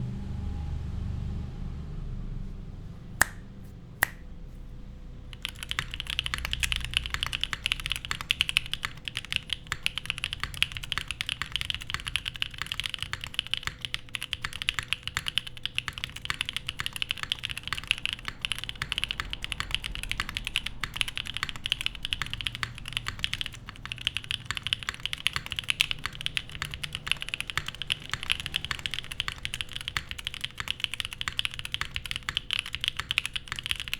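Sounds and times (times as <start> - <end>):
mechanical keyboard typing: 5.3 - 33.9.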